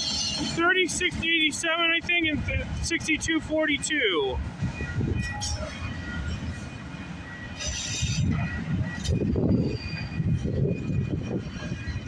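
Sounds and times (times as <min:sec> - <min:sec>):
wheels squealing: 0:00.0 - 0:00.7, 0:04.7 - 0:12.0
freight train rumbling past: 0:00.0 - 0:12.0
wheels clattering on rails: 0:04.4 - 0:12.0.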